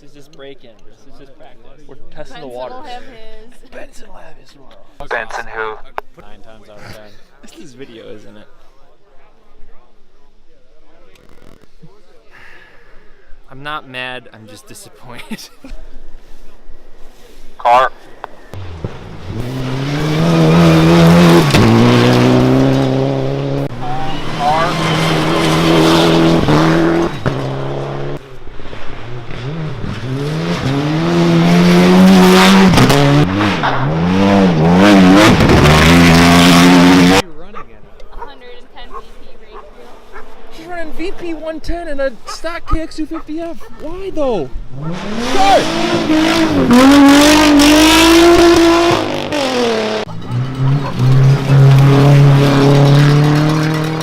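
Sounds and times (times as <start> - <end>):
rally car engine revving: 18.5 - 37.2, 44.6 - 54.0.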